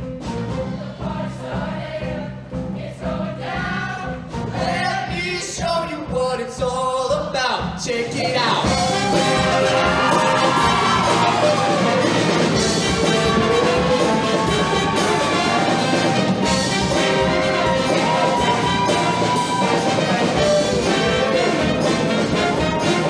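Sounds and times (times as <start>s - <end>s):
choir singing: 0.6s - 5.2s, 8.0s - 23.0s
brass horns playing melody: 8.6s - 23.0s
live band playing: 8.6s - 23.0s.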